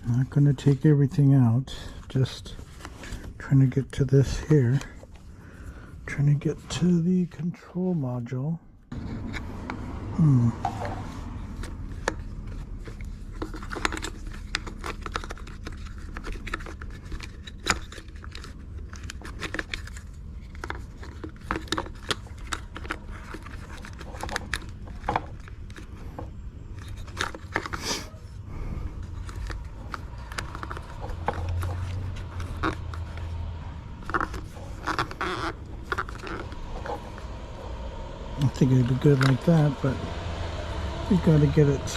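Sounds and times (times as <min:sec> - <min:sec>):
steady low hum: 0:00.0 - 0:41.9
clicks and scrapes on plastic: 0:10.6 - 0:27.8, 0:29.0 - 0:37.0.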